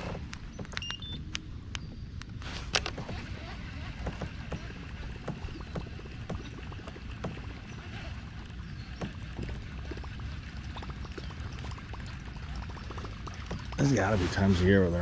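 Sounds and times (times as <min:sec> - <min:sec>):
kayak clicks and knocks: 0:02.5 - 0:11.3.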